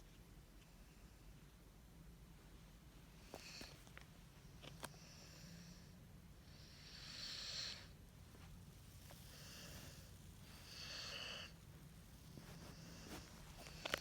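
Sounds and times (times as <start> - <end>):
dog snoring softly: 9.0 - 14.0.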